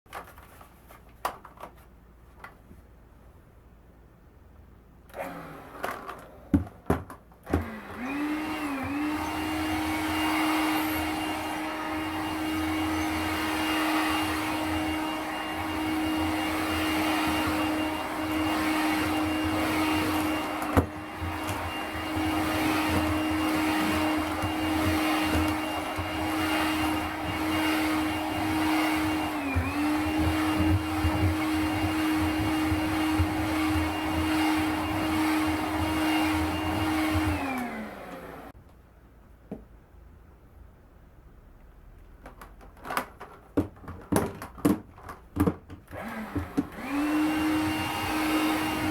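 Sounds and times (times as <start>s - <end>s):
stick vacuum cleaner whine: 5.1s - 38.6s, 45.4s - 48.9s.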